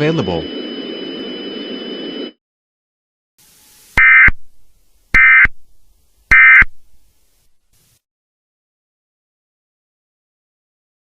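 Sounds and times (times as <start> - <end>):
hiss with high whine: 3.4 - 4.4.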